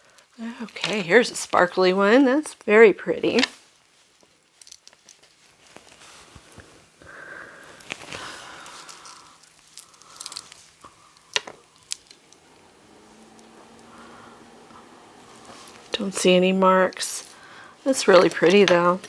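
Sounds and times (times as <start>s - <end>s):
light rustling of handling: 3.2s - 7.0s, 7.6s - 19.0s.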